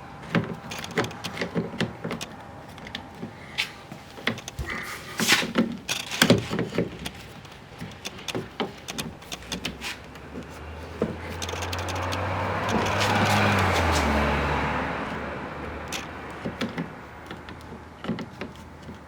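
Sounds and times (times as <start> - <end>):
clicks and knocks of tools: 0.2 - 14.2, 15.8 - 19.0
passing vehicle engine and tyres: 9.1 - 19.0.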